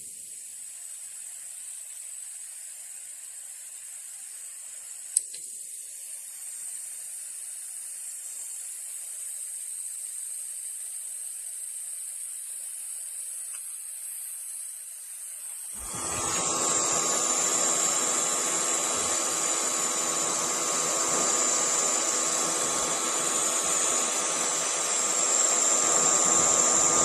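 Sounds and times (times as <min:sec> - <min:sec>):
cooler high-pitched hiss: 0:00.0 - 0:27.0
sharp click: 0:05.2 - 0:05.5.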